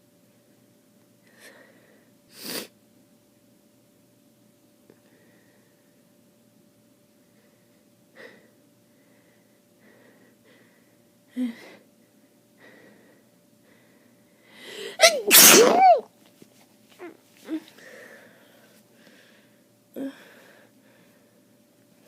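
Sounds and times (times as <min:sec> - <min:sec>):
person breathing: 0:01.3 - 0:02.1, 0:05.0 - 0:05.9, 0:07.4 - 0:11.9, 0:12.6 - 0:15.0, 0:17.8 - 0:21.4
person sneezing loudly: 0:15.0 - 0:16.1.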